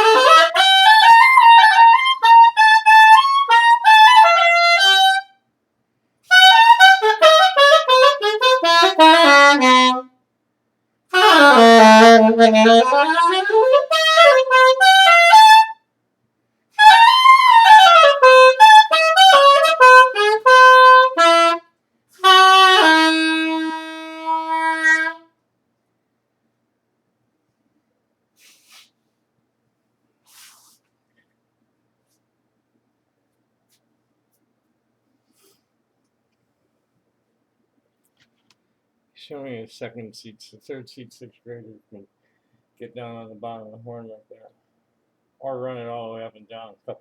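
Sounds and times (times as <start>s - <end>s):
solo saxophone improvising: 0.0s - 5.3s, 6.3s - 10.1s, 11.1s - 15.8s, 16.8s - 25.3s.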